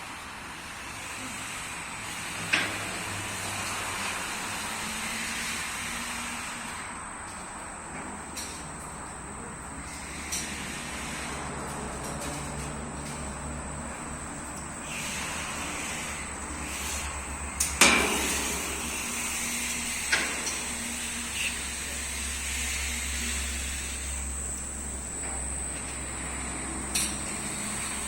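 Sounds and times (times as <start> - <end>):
washing machine humming and whining: 0.0 - 28.0
sharp knocks and clanks: 17.6 - 19.1.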